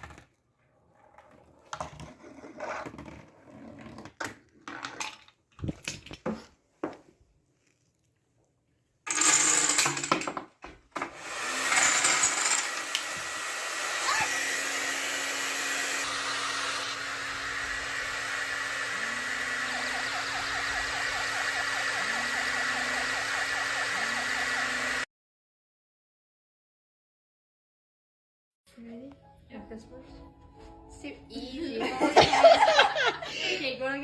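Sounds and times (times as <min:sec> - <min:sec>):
hair dryer running: 0:11.0 - 0:25.1.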